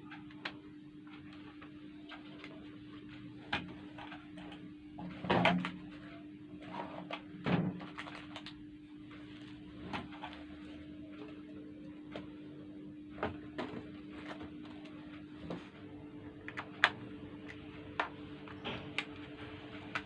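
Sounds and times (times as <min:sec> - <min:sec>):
steady low hum: 0:00.0 - 0:20.0
plastic clatter: 0:07.0 - 0:08.6.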